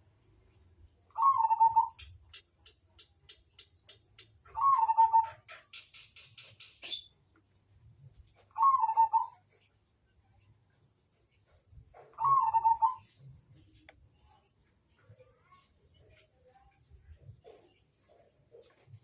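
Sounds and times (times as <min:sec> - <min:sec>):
dove cooing: 0:01.2 - 0:02.1, 0:04.5 - 0:05.7, 0:08.6 - 0:09.4, 0:12.2 - 0:13.1
quick ticking bird notes: 0:01.3 - 0:07.2.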